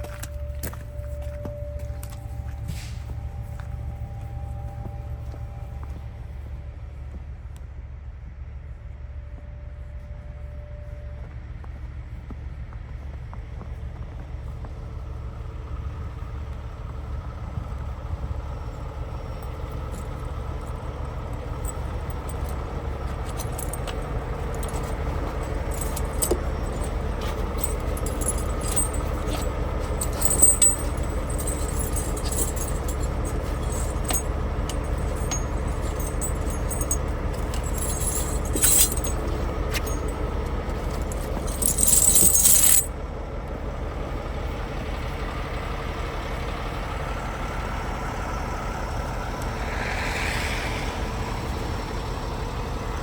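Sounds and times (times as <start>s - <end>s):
diesel truck engine droning: 13.6s - 53.0s
keys and loose parts rattling: 19.2s - 42.9s.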